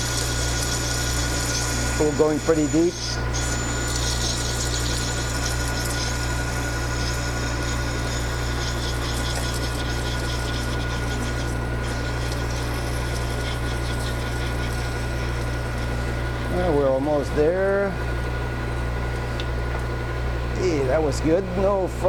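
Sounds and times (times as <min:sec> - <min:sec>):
lathe motor hum: 0:00.0 - 0:22.0.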